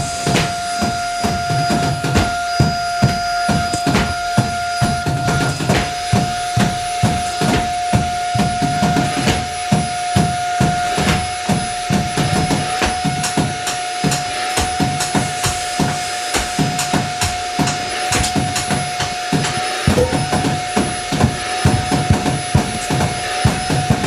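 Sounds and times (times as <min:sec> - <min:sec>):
sustained drone tone: 0:19.9 - 0:20.8
low percussive thuds: 0:19.9 - 0:20.9.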